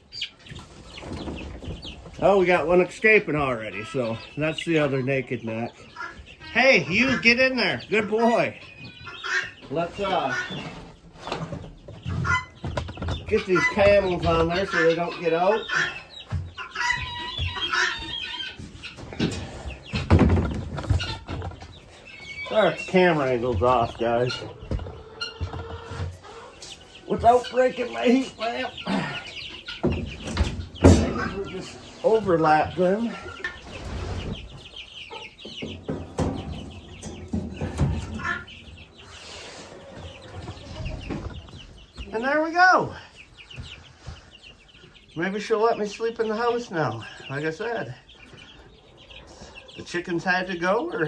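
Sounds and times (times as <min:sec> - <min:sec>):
chicks peeping: 0:00.0 - 0:51.0
panels knocking and rattling: 0:10.0 - 0:15.3, 0:18.6 - 0:21.9, 0:27.1 - 0:33.7, 0:35.3 - 0:39.0
knocks and thumps of panels: 0:19.2 - 0:21.7, 0:29.8 - 0:31.7, 0:35.5 - 0:38.5.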